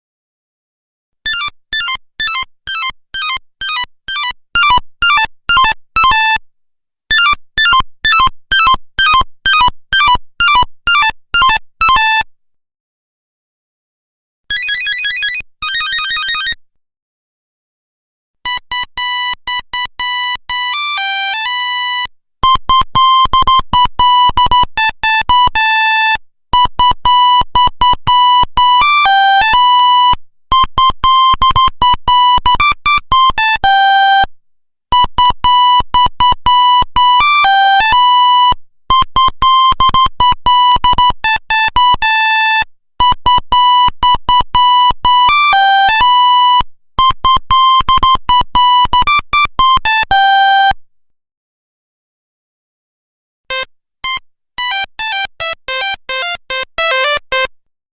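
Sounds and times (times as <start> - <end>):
monophonic ringtone melody: 54.7 - 57.4.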